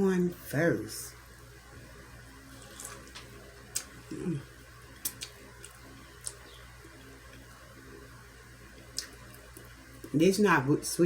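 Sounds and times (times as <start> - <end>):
biting and chewing corn on the cob: 2.6 - 4.0.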